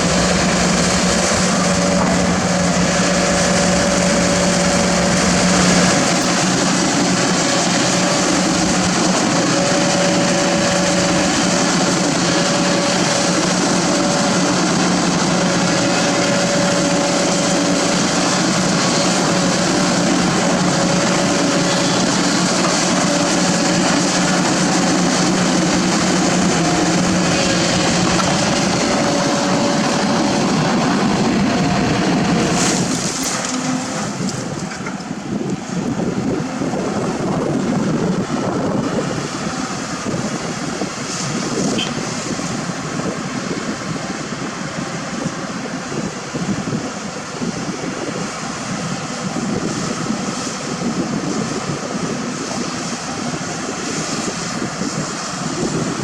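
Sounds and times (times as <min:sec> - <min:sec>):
higher machine tone: 0:00.0 - 0:34.6, 0:41.7 - 0:42.3
excavator diesel engine running: 0:00.0 - 0:56.0.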